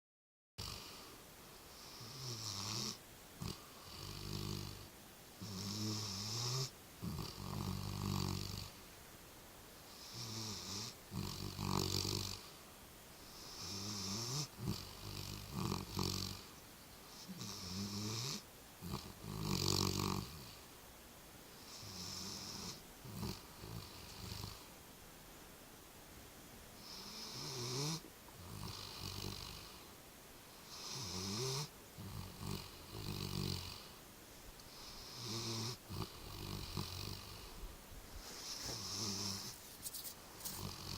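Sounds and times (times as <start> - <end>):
person snoring: 5.4 - 8.8, 10.0 - 12.4, 13.4 - 16.5, 17.2 - 20.6, 30.6 - 33.9, 34.8 - 37.6, 38.4 - 39.6, 40.4 - 40.9.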